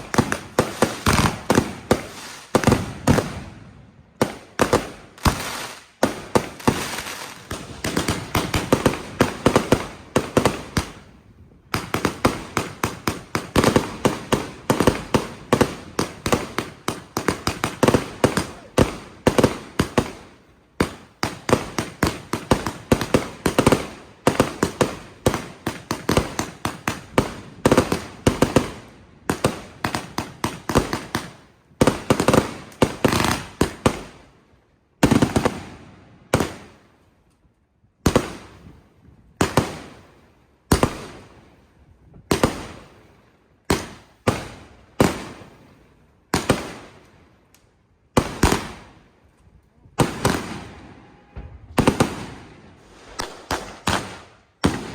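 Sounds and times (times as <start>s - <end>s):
fireworks banging: 0.0s - 31.3s, 49.8s - 54.9s.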